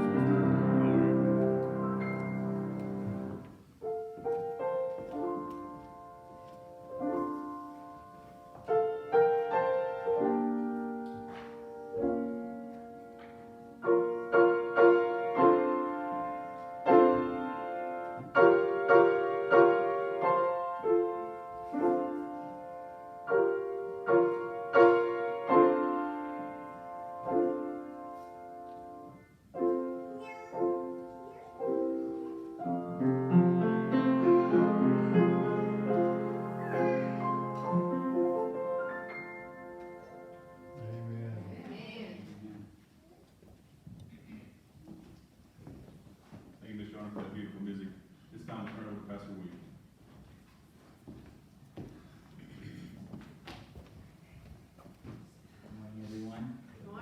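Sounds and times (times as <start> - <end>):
slow solo piano: 0.0 - 41.7.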